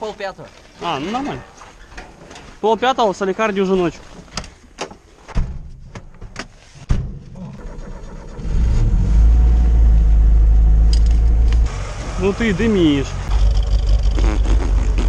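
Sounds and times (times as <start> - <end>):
car engine rumbling: 7.1 - 15.0.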